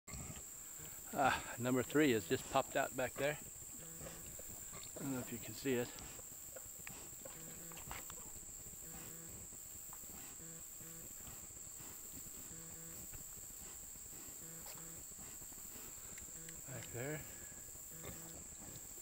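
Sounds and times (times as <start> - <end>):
crickets droning: 0.1 - 19.0
pig grunting: 0.2 - 6.2, 14.1 - 18.8.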